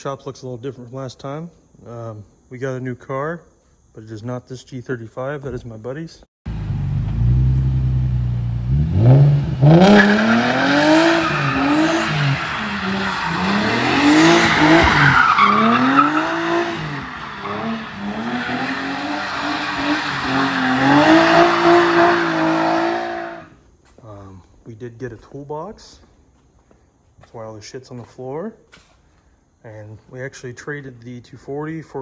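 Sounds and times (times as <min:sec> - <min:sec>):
car engine revving hard: 0:06.5 - 0:23.5
tyre squeal: 0:09.6 - 0:23.6.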